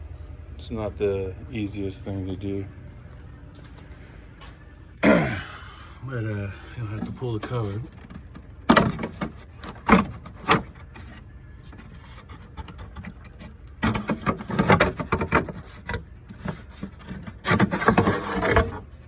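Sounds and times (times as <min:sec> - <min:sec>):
rubbing scrapes: 0:08.8 - 0:18.8.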